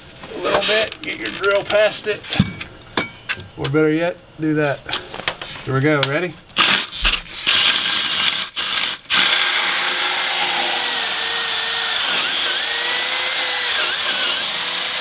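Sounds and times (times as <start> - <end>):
cordless drill boring wood: 6.6 - 15.0.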